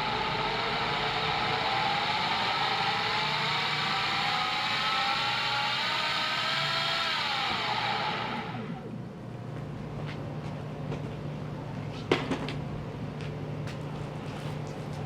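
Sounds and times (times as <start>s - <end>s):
electric motor whine: 0.0s - 9.0s.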